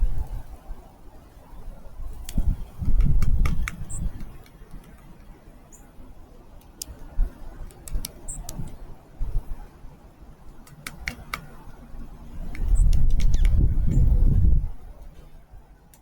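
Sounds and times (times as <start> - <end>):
sharp taps and clicks: 2.2 - 5.3, 6.6 - 8.8, 10.6 - 11.5, 12.5 - 13.6.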